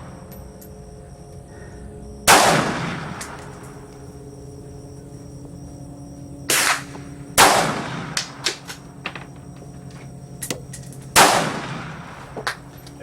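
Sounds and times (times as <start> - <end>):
faint gunshot cracks: 2.3 - 3.4, 6.5 - 8.6
loud rifle shots with echo: 2.3 - 3.6, 6.5 - 8.7, 11.1 - 12.5.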